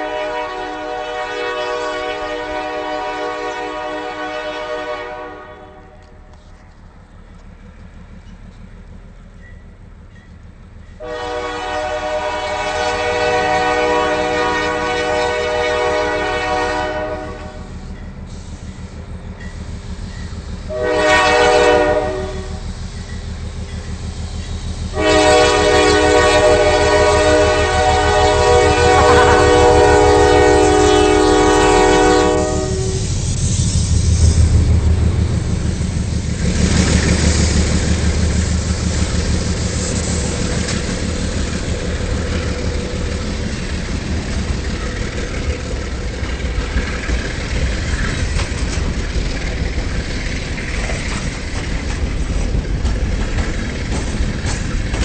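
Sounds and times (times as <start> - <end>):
locomotive air horn blast: 0.0 - 6.6, 11.0 - 18.7, 20.6 - 22.8, 24.9 - 34.4, 39.1 - 43.5
low diesel rumble: 0.0 - 55.0
train wheels over rail joints: 0.0 - 55.0.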